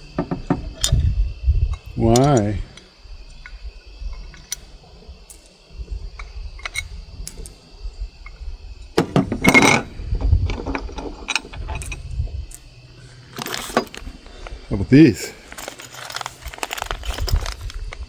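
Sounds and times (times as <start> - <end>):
small metal parts rattling: 9.0 - 18.0.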